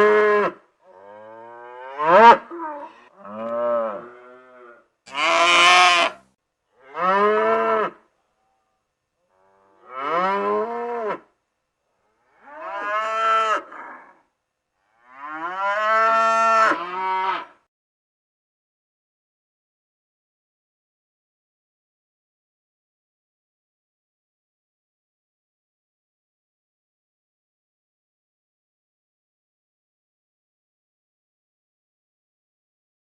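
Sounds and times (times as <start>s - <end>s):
cattle mooing: 1.0s - 6.2s.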